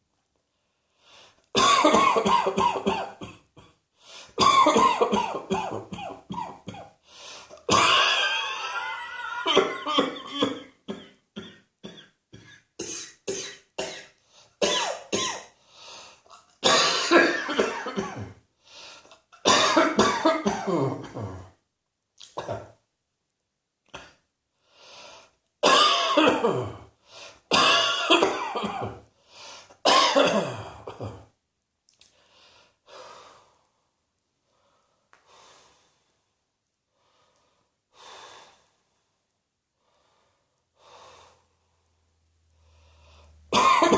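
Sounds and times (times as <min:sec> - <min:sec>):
faint breaths: 0:00.5 - 0:01.5, 0:03.9 - 0:04.4, 0:07.0 - 0:07.6, 0:15.5 - 0:16.4, 0:18.6 - 0:19.3, 0:24.5 - 0:25.4, 0:27.0 - 0:27.5, 0:29.1 - 0:29.8, 0:32.0 - 0:39.2, 0:39.8 - 0:43.5
person coughing: 0:01.6 - 0:03.8, 0:04.4 - 0:06.9, 0:07.7 - 0:15.5, 0:16.3 - 0:18.4, 0:19.4 - 0:21.5, 0:25.6 - 0:26.9, 0:27.5 - 0:29.0, 0:29.8 - 0:31.3, 0:43.5 - 0:43.9.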